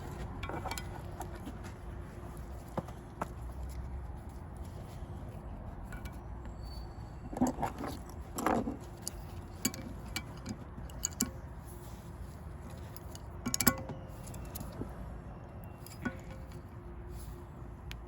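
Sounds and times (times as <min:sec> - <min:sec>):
low steady hum: 0:00.0 - 0:18.0
hand tools clicking on metal: 0:07.3 - 0:12.0, 0:12.6 - 0:14.8, 0:15.6 - 0:16.7.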